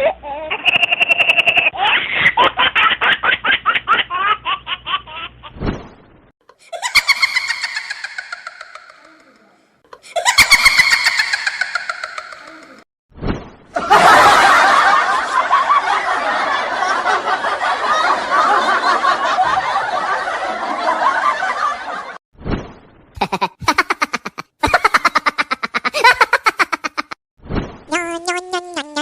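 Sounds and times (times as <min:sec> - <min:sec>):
laughter: 0:00.4 - 0:05.4, 0:06.6 - 0:09.3, 0:09.9 - 0:12.8, 0:13.8 - 0:22.2, 0:23.2 - 0:27.2
choppy bursts of laughing: 0:06.6 - 0:12.8, 0:23.2 - 0:27.2.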